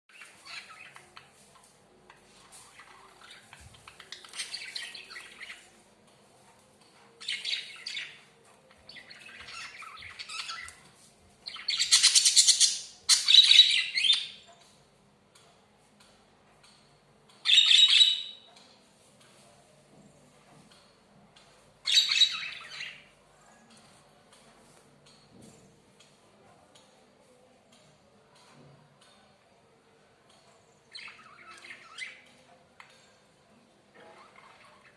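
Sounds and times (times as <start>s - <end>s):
budgies chirping and chattering: 0.1s - 5.8s, 7.2s - 14.4s, 17.4s - 18.4s, 21.8s - 23.2s, 30.9s - 32.4s, 33.9s - 34.9s.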